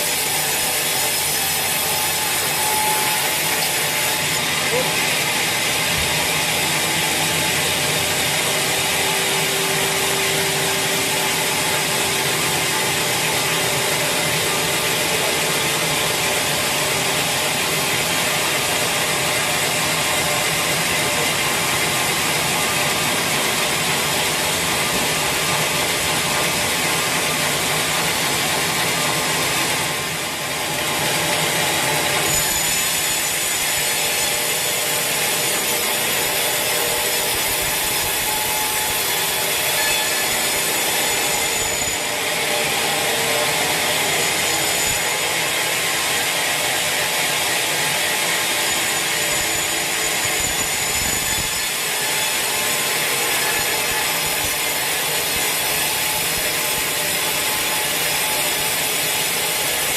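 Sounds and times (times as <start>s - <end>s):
saw rasping through log: 0.0s - 59.9s.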